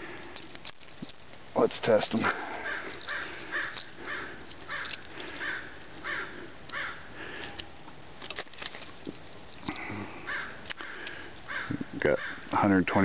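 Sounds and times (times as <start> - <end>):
bird calling: 2.2 - 7.6, 9.6 - 12.6.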